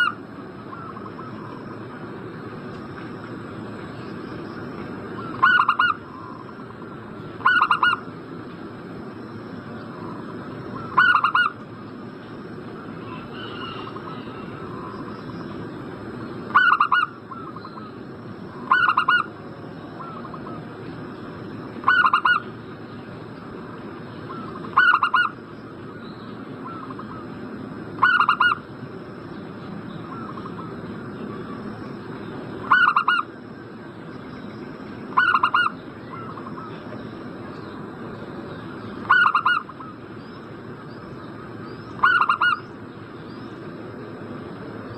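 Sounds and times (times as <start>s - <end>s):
background hiss: 0.0s - 44.9s
dove cooing: 5.2s - 6.8s, 7.4s - 8.1s, 10.7s - 11.6s, 13.0s - 15.4s, 16.5s - 17.9s, 18.5s - 19.3s, 20.0s - 20.6s, 21.8s - 22.5s, 24.3s - 25.4s, 28.0s - 28.6s, 32.6s - 33.3s, 35.1s - 36.8s, 39.0s - 40.0s, 42.0s - 42.6s.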